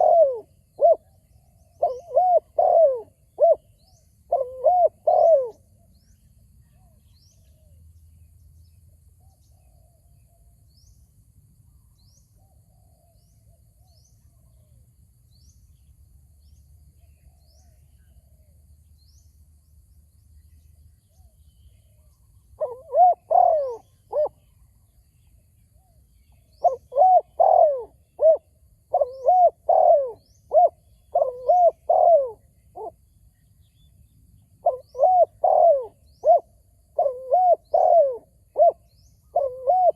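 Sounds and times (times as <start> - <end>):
dove cooing: 0.0 - 5.6, 22.6 - 24.5, 26.5 - 33.0, 34.6 - 39.9.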